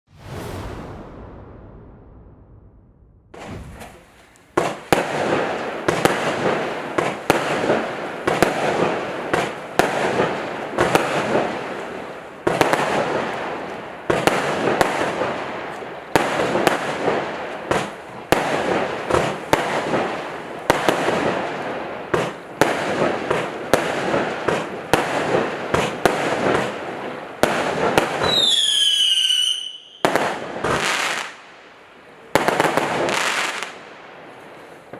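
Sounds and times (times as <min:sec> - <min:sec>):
descending firework whistle: 0:28.2 - 0:30.1.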